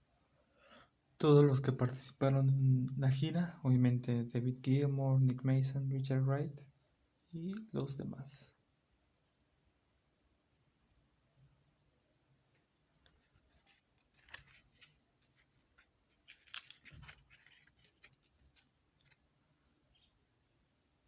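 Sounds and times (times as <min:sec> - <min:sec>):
paper pages crinkling: 0:12.5 - 0:19.3.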